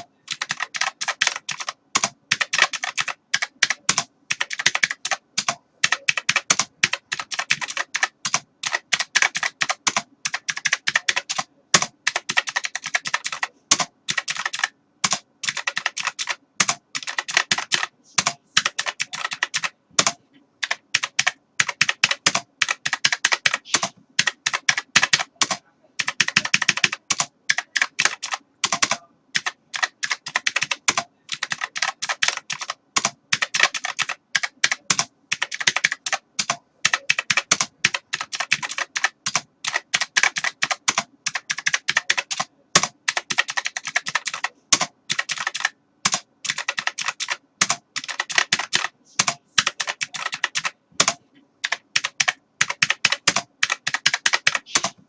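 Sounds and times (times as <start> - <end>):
typing on a keyboard: 0.0 - 55.0.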